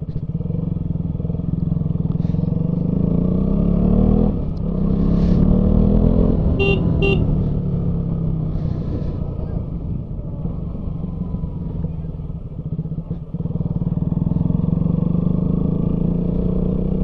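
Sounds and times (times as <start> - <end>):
motorcycle engine accelerating: 0.0 - 17.0
short horn beeps: 6.5 - 7.4.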